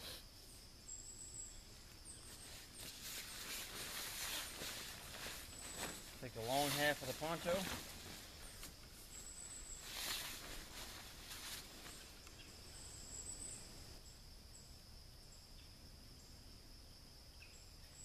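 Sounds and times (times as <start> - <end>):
higher insect chirps: 0.0 - 18.0
insects chirring: 0.0 - 18.0
poncho rustling: 1.7 - 12.5.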